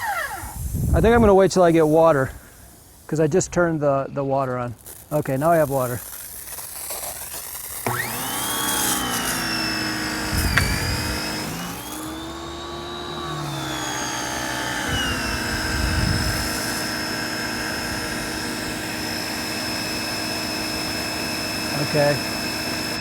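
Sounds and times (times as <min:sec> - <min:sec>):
pressure washer motor whine: 0:00.0 - 0:02.6, 0:07.8 - 0:23.0.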